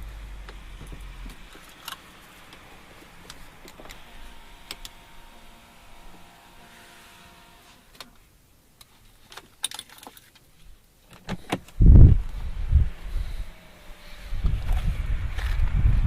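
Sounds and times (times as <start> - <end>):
faint steady hum: 0.0 - 9.3.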